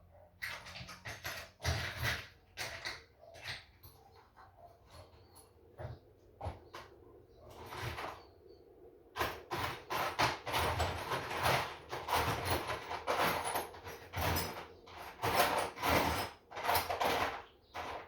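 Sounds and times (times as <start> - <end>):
metal tools scraping and clattering: 9.2 - 18.0.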